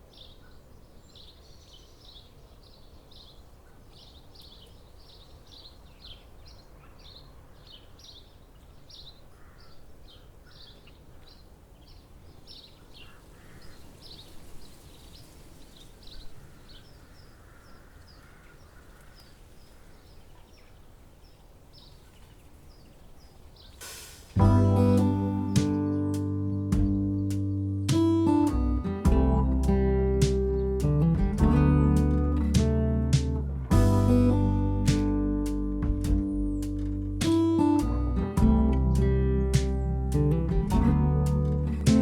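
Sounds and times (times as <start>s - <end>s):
faint background noise: 0.0s - 42.0s
acoustic guitar music: 24.4s - 42.0s.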